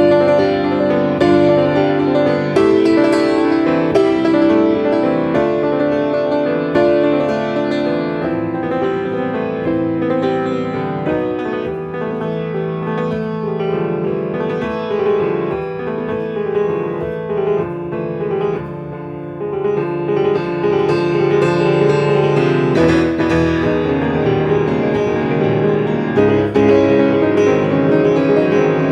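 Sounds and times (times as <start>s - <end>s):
solo piano playing: 0.0s - 28.9s.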